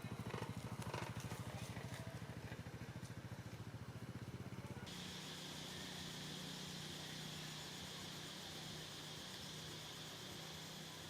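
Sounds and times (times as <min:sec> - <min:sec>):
motor running with low pulse: 0:04.8 - 0:11.0
steady low hum: 0:04.8 - 0:11.0
steady high hiss: 0:04.9 - 0:11.0.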